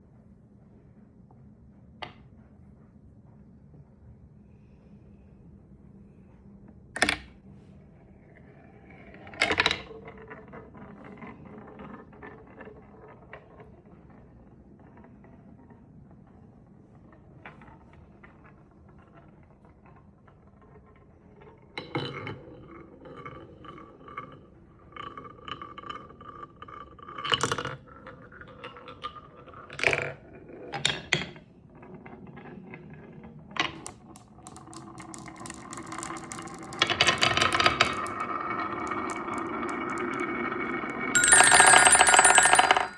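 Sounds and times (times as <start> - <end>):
marbles rolling on wooden track: 33.7 - 42.9
bright ringing chime: 41.2 - 42.9.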